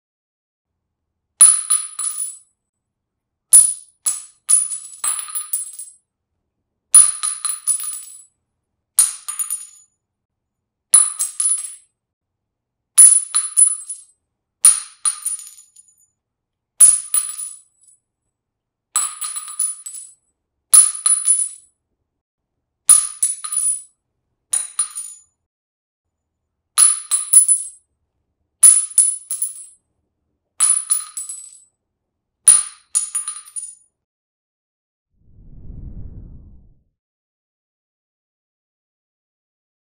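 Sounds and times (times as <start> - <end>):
shell casings clinking on concrete: 1.4 - 2.5, 3.6 - 6.0, 7.0 - 8.2, 9.0 - 9.8, 11.0 - 11.9, 13.1 - 16.1, 16.9 - 18.0, 19.0 - 20.2, 20.8 - 21.7, 24.6 - 25.3, 28.8 - 29.8, 30.6 - 31.7, 32.5 - 33.8.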